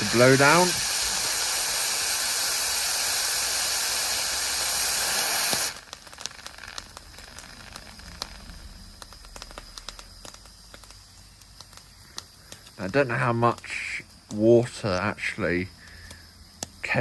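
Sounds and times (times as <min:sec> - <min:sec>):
steam venting hiss: 0:00.0 - 0:17.0
faint clicks and crackles: 0:05.4 - 0:14.8, 0:15.8 - 0:16.9.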